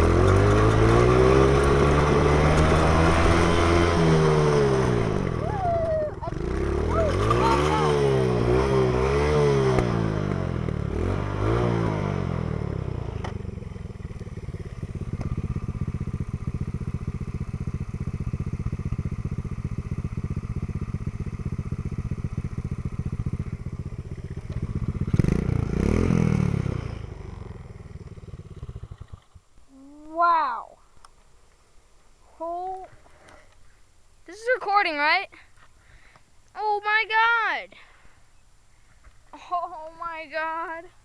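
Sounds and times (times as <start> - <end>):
atv engine revving: 0.0 - 29.4.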